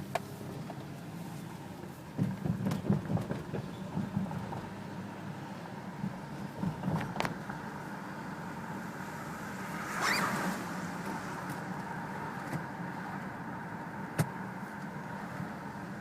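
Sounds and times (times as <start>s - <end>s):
jacket zipper zipping: 10.0s - 10.5s.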